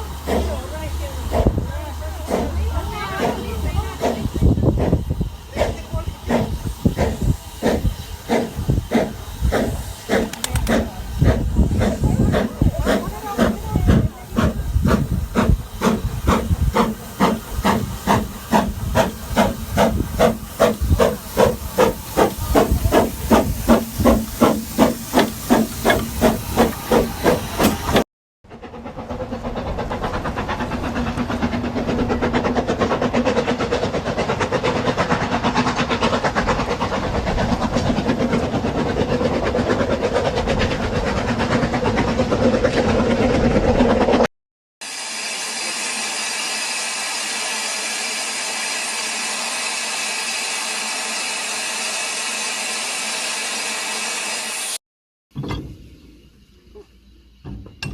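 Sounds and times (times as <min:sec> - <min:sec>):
steam hissing: 0:00.0 - 0:28.0, 0:29.0 - 0:42.0, 0:44.8 - 0:54.8
steam locomotive chuffing: 0:00.0 - 0:54.8.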